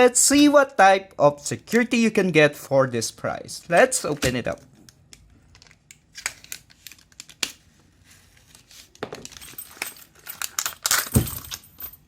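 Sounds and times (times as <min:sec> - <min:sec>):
plastic packaging tearing and crinkling: 0:05.5 - 0:07.7.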